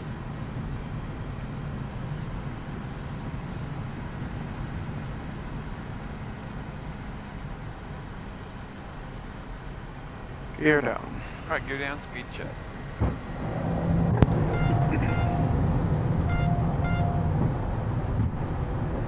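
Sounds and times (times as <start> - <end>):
aircraft cockpit low hum: 0.0 - 19.0
rush of airflow: 12.8 - 16.3.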